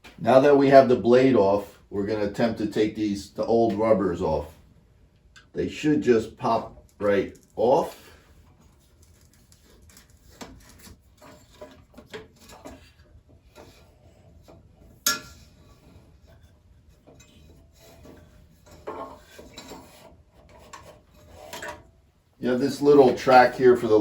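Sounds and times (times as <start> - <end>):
small clicks and scrapes: 6.6 - 7.6, 8.3 - 22.1.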